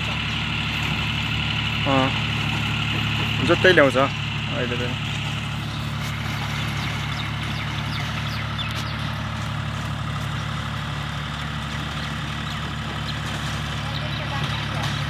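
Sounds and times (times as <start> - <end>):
tractor engine running: 0.0 - 15.0.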